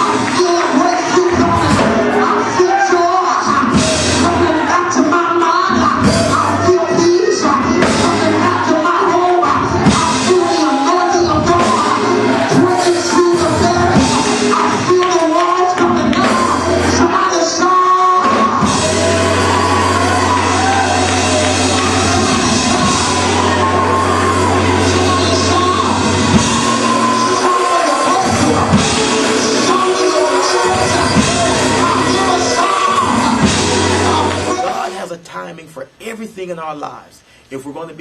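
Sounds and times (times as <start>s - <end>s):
church band with singing: 0.0s - 34.9s.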